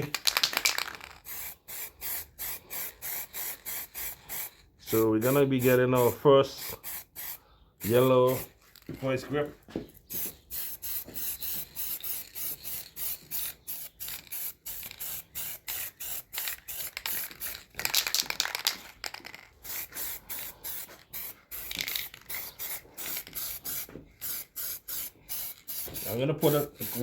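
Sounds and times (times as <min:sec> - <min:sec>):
aerosol spray can hissing: 0:01.2 - 0:04.6, 0:06.6 - 0:08.6, 0:10.1 - 0:17.6, 0:19.6 - 0:27.0.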